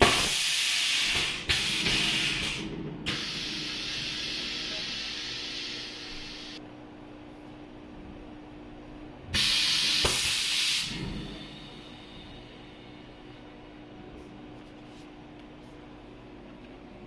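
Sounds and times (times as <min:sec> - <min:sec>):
machine venting pressure hiss: 0:00.0 - 0:06.6, 0:09.3 - 0:12.5
steady machine hum: 0:00.0 - 0:17.0.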